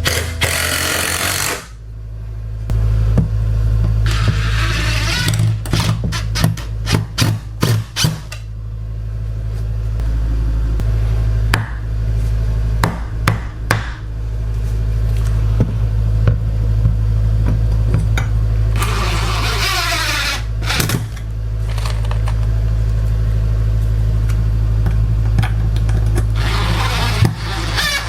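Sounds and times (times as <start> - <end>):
steady low hum: 0.0 - 28.0
hammer strikes: 11.5 - 11.9, 12.8 - 14.0.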